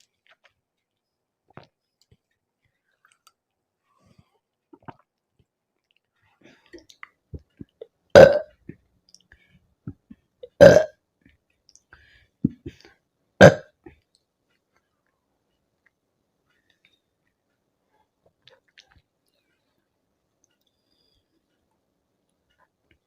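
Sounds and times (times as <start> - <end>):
woman burping: 8.2 - 8.5, 10.5 - 11.0, 13.4 - 13.7.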